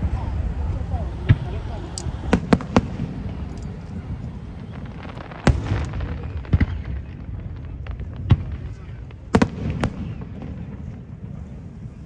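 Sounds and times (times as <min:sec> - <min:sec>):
low rumble: 0:00.0 - 0:09.4
fireworks bangs: 0:00.0 - 0:12.0.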